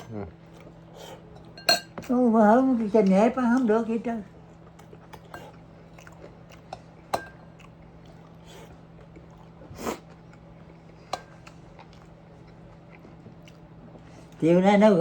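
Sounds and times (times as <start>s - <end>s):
soft chewing: 0.1s - 2.2s, 2.8s - 14.4s
utensil clinking against dish: 1.3s - 2.1s, 6.7s - 7.5s.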